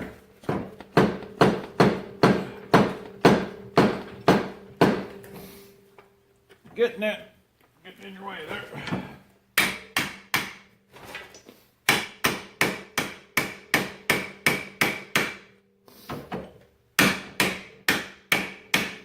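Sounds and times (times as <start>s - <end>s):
hammer striking steel: 0.9s - 5.5s, 9.6s - 10.7s, 11.9s - 15.5s, 17.0s - 19.0s.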